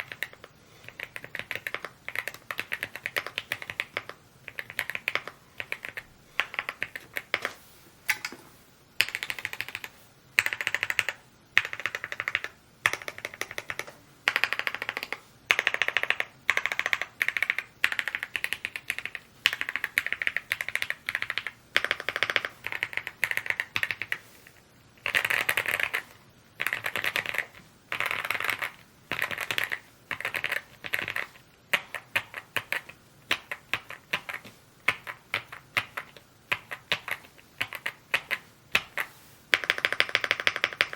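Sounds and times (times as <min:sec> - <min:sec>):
mechanical keyboard typing: 0:00.0 - 0:07.6, 0:09.0 - 0:24.2, 0:25.0 - 0:40.9.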